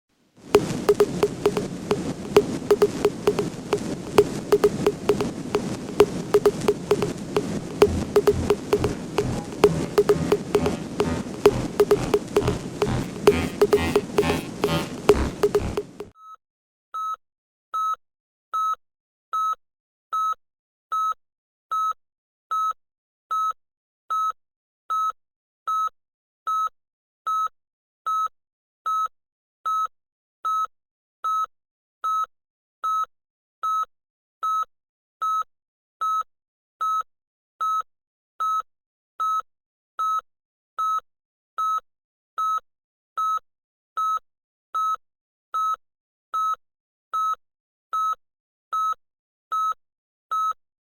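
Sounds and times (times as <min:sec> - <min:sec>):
electronic beeping: 0:00.6 - 0:16.1.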